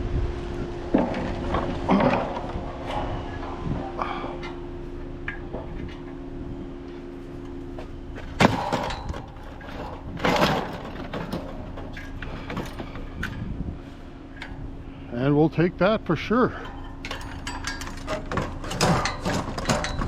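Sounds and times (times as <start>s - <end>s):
steady low hum: 0.0s - 20.0s
scrap clattering: 7.8s - 13.5s, 16.5s - 20.0s.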